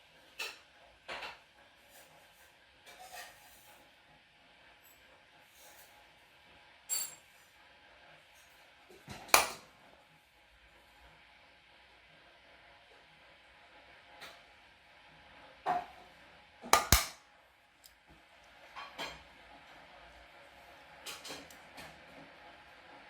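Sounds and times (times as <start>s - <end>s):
tools clinking on a workbench: 6.9s - 7.2s.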